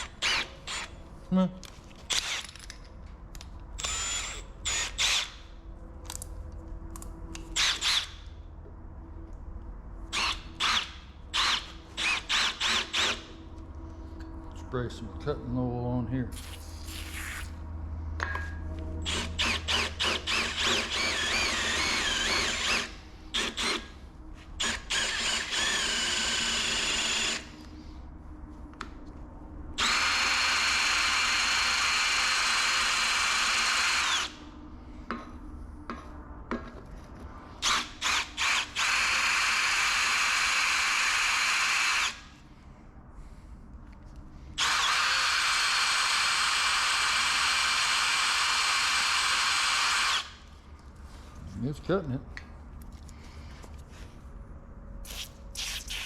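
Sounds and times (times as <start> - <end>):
electric drill boring into metal: 2.1 - 2.6, 3.8 - 5.4, 7.6 - 8.1, 10.2 - 13.3, 19.1 - 23.9, 24.6 - 27.5, 29.8 - 34.4, 37.6 - 42.2, 44.6 - 50.4.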